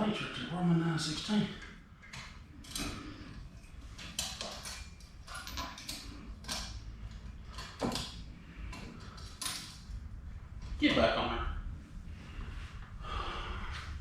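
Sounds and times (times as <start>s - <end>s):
tools clattering in a toolbox: 2.6s - 9.9s.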